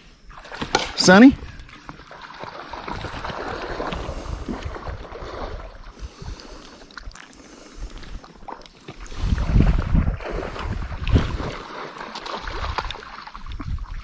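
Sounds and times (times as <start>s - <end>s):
river water flowing: 0.2s - 9.5s, 10.2s - 13.5s
wind buffeting microphone: 2.7s - 6.6s, 9.0s - 11.8s, 12.4s - 14.0s.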